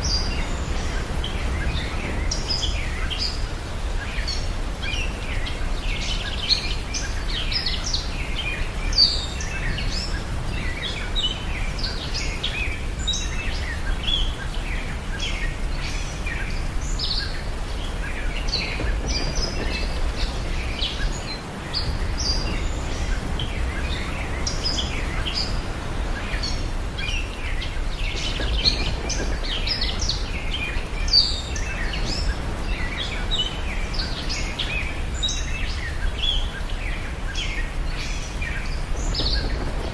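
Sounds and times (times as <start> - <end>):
small birds chirping: 0.0 - 39.9
low outdoor rumble: 8.2 - 39.9.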